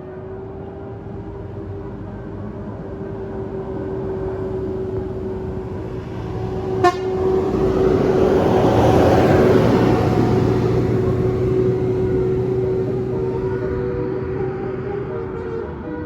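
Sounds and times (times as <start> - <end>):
large vehicle engine and tyres: 0.0 - 16.0
steady horn-like tone: 6.7 - 8.2
short sharp horn toot: 6.8 - 7.1.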